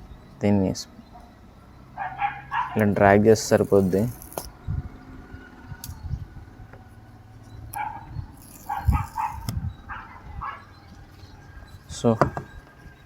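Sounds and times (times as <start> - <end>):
dog barking: 2.0 - 2.9, 7.8 - 10.7.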